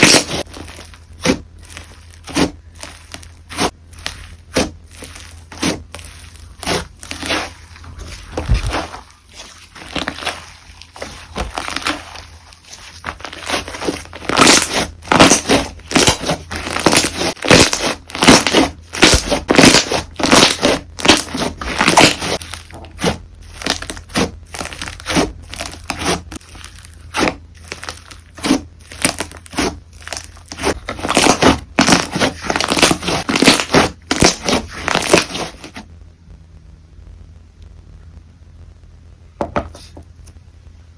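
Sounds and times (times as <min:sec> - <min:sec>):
slime squeezed with crackly pops: 0:12.8 - 0:35.7.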